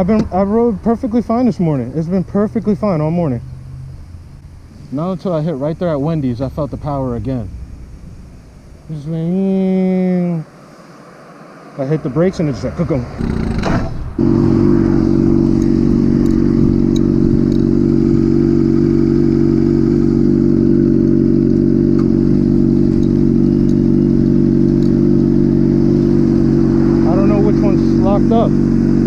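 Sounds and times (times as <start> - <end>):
motorcycle engine idling: 13.2 - 29.0.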